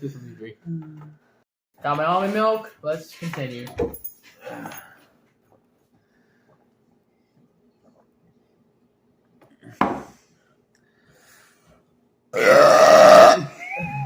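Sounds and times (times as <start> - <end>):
man burping loudly: 12.4 - 13.6.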